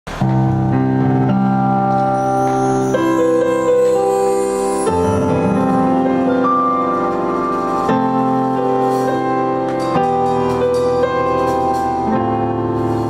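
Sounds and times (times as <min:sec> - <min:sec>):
keyboard playing held chords: 0:00.1 - 0:13.0.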